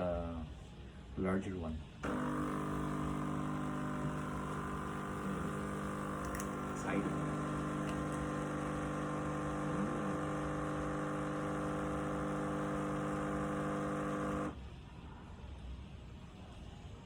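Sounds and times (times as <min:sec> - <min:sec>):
coffee machine pump buzzing: 0:02.0 - 0:14.6.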